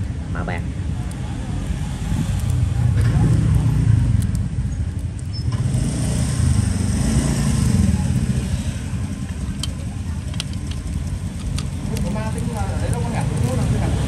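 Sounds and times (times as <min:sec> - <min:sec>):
street traffic rumble: 0:00.0 - 0:14.0.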